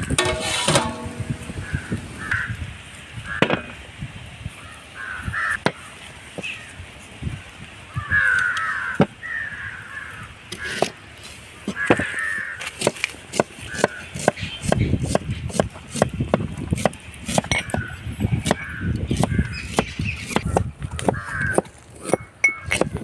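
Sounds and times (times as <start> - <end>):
crows cawing: 1.5 - 2.6, 4.6 - 6.7, 8.0 - 11.0, 11.6 - 12.8, 13.7 - 14.1, 17.5 - 18.0, 18.6 - 19.6, 20.9 - 21.8.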